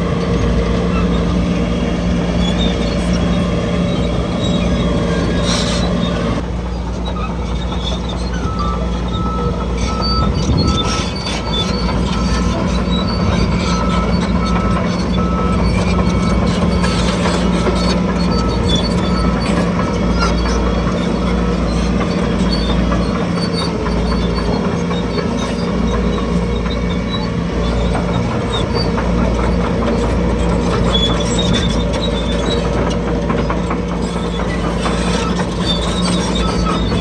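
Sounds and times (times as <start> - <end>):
bulldozer diesel engine running: 0.0 - 37.0
steel tracks clanking and squealing: 0.0 - 37.0.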